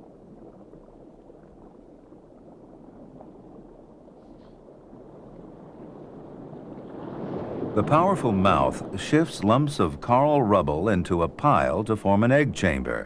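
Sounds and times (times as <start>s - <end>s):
fine crackle: 0.0s - 7.8s
low watery rumble: 0.0s - 13.0s.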